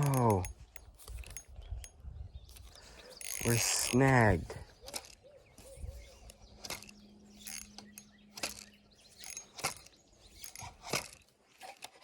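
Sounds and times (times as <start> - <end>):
fishing reel clicking: 0.0 - 1.9, 3.2 - 4.1, 6.6 - 9.8.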